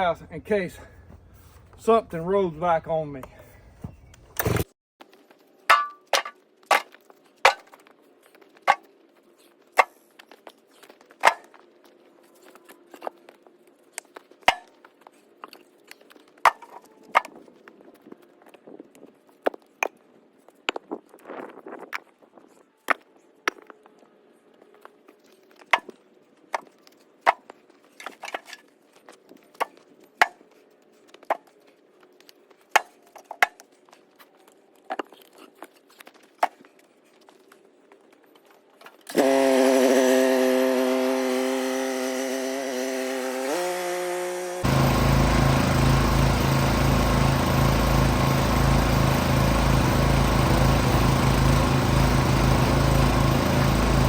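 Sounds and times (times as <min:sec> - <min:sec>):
small petrol engine running: 0:39.1 - 0:54.0.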